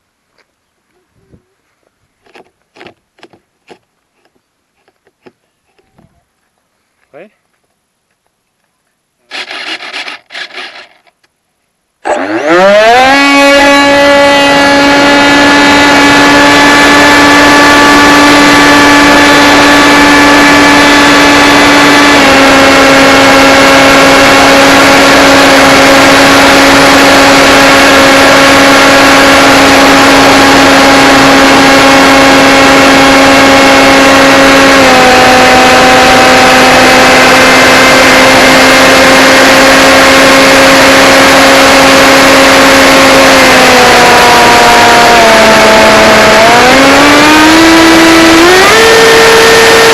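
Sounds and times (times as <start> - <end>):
quadcopter motors whining: 9.3 - 11.1, 12.0 - 49.9.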